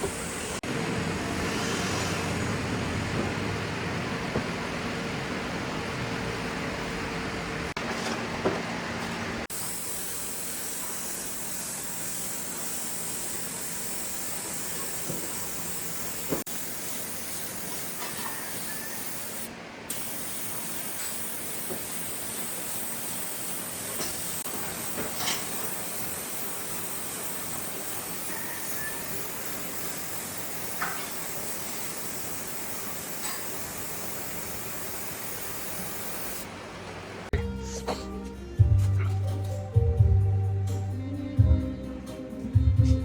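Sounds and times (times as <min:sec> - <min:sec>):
steady high hiss: 0:09.5 - 0:36.6.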